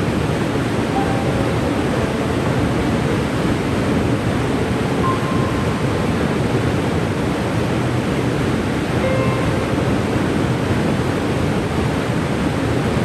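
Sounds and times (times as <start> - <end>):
waterfall rushing: 0.0 - 13.0
faint pitched tone: 0.8 - 7.2.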